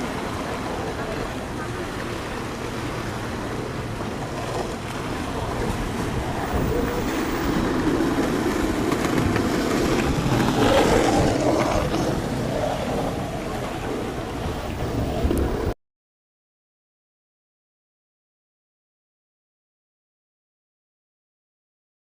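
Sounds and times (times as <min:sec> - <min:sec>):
ship engine: 0:00.0 - 0:15.7
water: 0:00.0 - 0:15.8
wind: 0:00.0 - 0:15.8.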